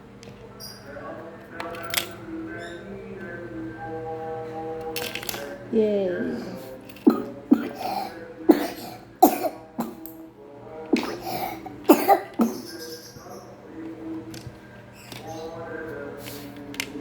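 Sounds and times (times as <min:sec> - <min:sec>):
child coughing: 0:06.4 - 0:10.1, 0:10.9 - 0:12.8.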